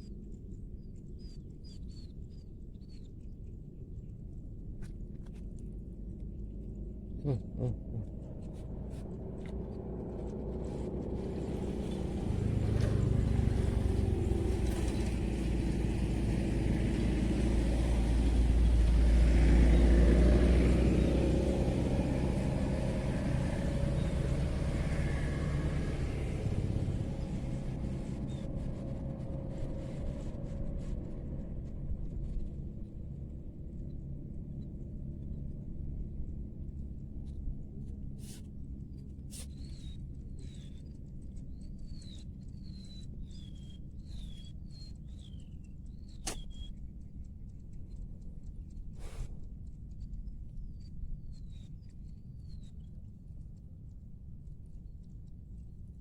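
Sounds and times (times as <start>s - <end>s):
engine passing by: 7.1s - 33.4s.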